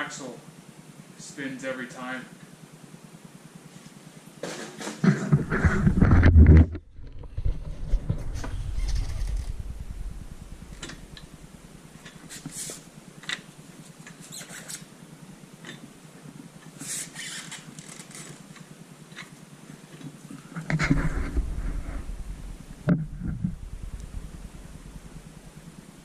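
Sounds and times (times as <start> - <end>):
low rumble: 5.4 - 12.0, 20.8 - 26.0
light clicks and scrapes of axles: 16.6 - 25.2.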